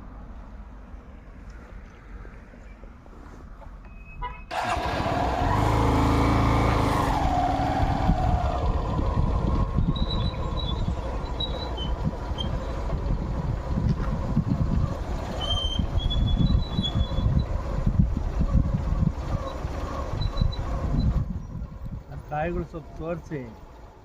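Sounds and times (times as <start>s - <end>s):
vehicle engine running: 4.5s - 22.0s
wind buffeting microphone: 4.8s - 23.2s.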